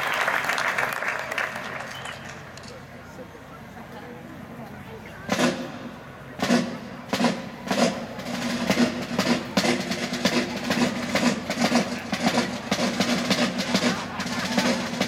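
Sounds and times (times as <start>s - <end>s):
military field drums: 4.9s - 15.0s.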